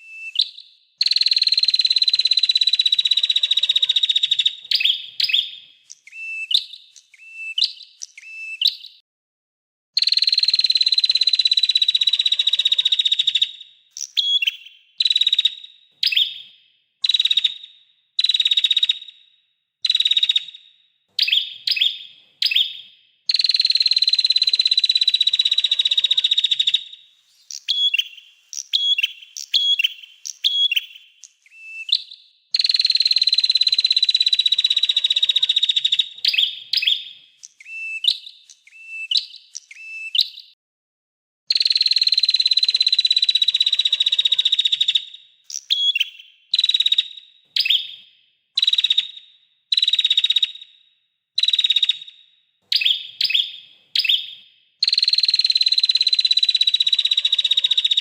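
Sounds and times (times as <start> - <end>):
songbird trills: 0.0 - 9.0, 13.0 - 19.2, 21.2 - 40.6.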